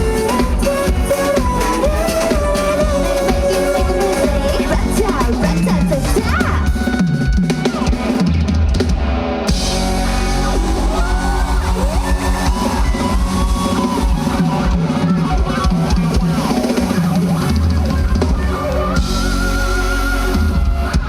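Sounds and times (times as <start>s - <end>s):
pop dance music: 0.0s - 7.8s
heavy drum beat: 0.0s - 21.0s.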